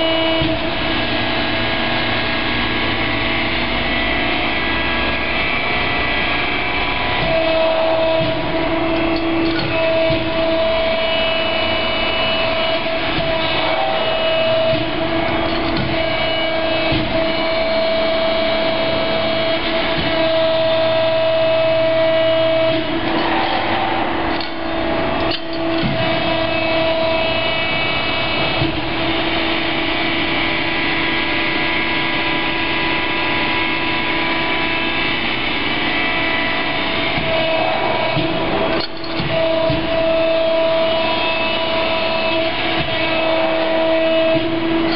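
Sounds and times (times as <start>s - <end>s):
hydraulic pump whine: 0.0s - 44.9s
mechanical hum: 0.0s - 44.9s.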